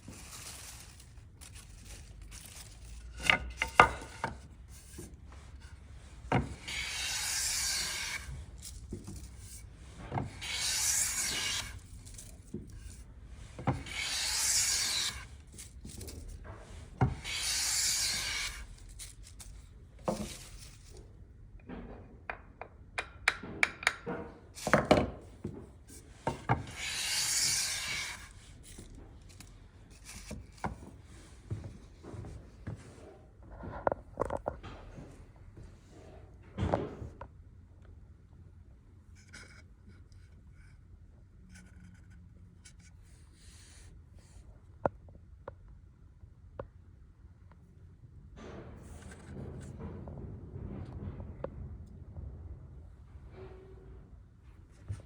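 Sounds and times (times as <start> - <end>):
hand plane shaving wood: 4.8 - 9.6, 10.2 - 13.0, 13.6 - 16.0, 17.0 - 19.1, 26.5 - 28.8
knocks and clicks: 21.8 - 24.4.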